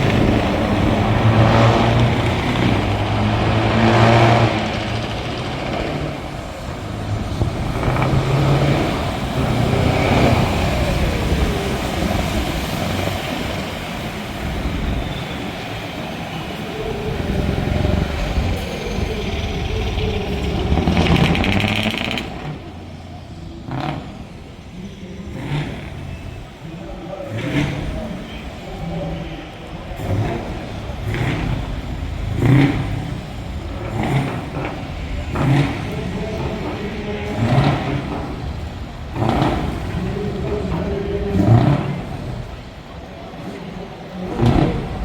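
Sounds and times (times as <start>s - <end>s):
truck engines revving: 0.0s - 45.0s.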